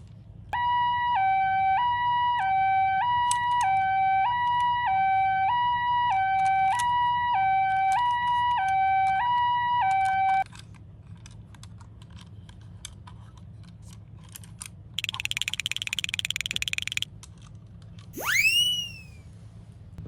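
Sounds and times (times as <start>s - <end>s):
toy electronic hi-lo siren: 0.6s - 10.4s, 15.0s - 17.0s, 18.2s - 19.2s
rapid buzzing electronic toy tone: 15.0s - 17.0s, 18.2s - 19.1s
toys clicking and tapping: 15.0s - 17.5s
upward-sweeping electronic whoop: 18.2s - 19.2s.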